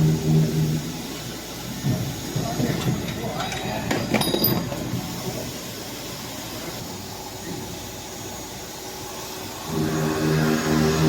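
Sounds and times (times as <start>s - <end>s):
circular saw machine running: 8.0s - 11.0s.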